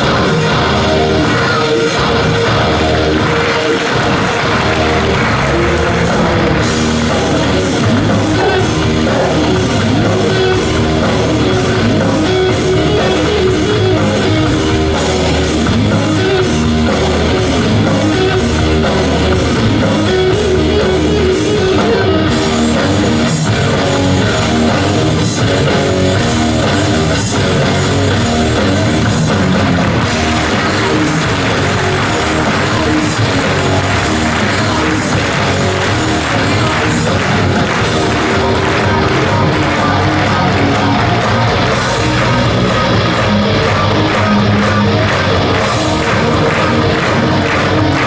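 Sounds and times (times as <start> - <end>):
drum kit: 0.0 - 48.0
electric guitar: 0.0 - 48.0.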